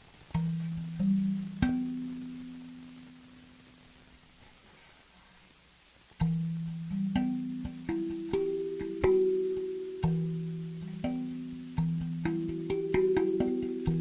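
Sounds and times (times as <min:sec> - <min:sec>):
plucked string melody: 0:00.3 - 0:03.3, 0:06.2 - 0:14.0.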